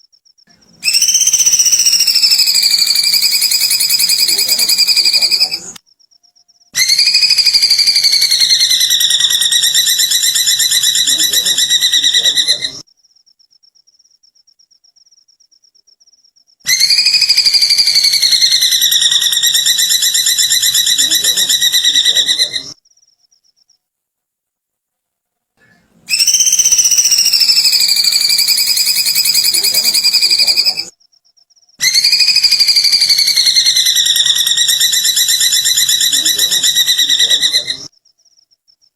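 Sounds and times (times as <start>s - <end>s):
bird pulsing trill: 0.9s - 5.8s, 26.1s - 30.9s.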